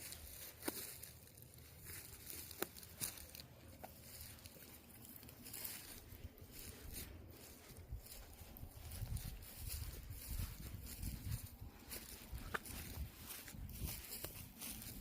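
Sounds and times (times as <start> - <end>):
footsteps crunching on trail: 0.0 - 15.0
low rumble of wind: 4.1 - 15.0.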